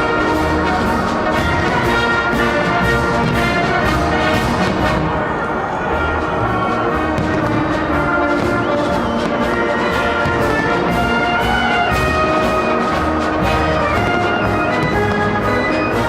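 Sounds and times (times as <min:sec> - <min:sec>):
orchestral music with brass: 0:00.0 - 0:16.0
regular beat: 0:06.5 - 0:16.0.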